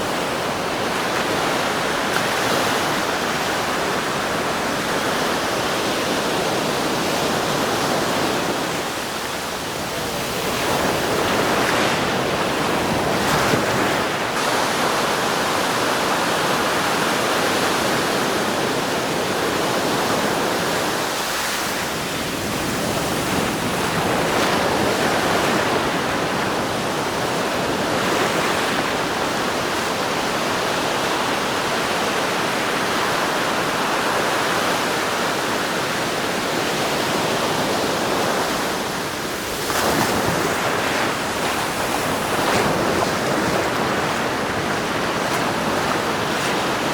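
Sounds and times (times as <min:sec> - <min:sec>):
waves breaking on beach: 0:00.0 - 0:46.9.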